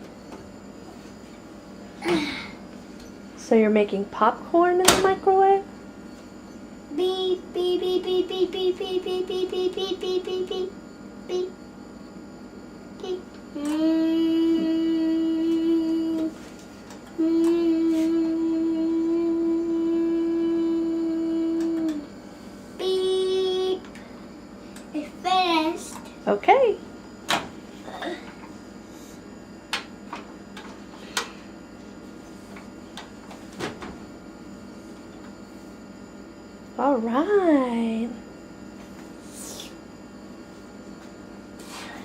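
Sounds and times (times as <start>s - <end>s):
person humming a long note: 13.6s - 16.4s, 17.2s - 22.1s.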